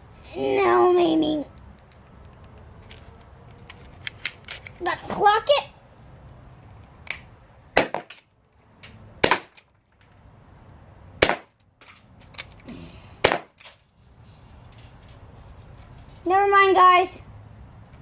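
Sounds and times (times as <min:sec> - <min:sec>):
pistol shots cracking: 0:07.8 - 0:08.2, 0:09.2 - 0:09.6, 0:11.2 - 0:11.6, 0:13.2 - 0:13.7.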